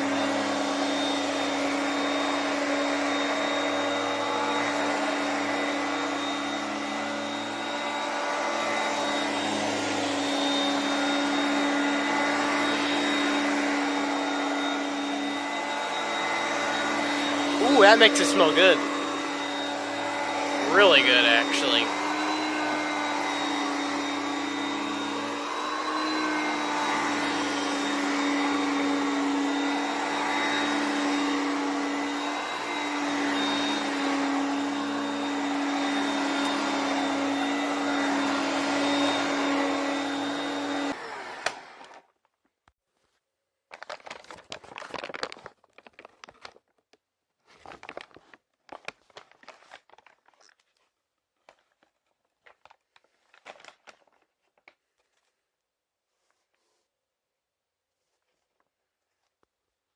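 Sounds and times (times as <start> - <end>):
vacuum cleaner running: 0.0 - 42.2
rustling and handling noise: 42.1 - 59.9.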